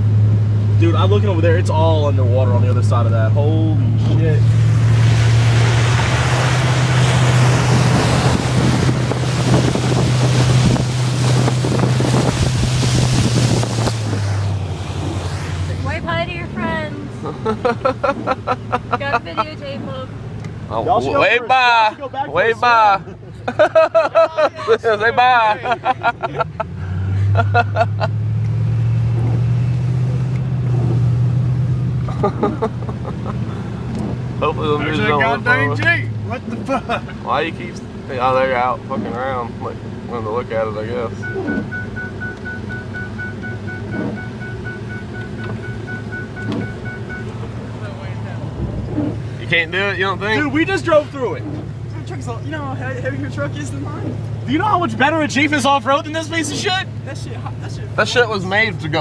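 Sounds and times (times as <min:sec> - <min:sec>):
pickup truck engine running: 0:00.0 - 0:20.8, 0:35.4 - 0:59.0
water rushing: 0:00.0 - 0:59.0
wind noise: 0:04.5 - 0:16.2.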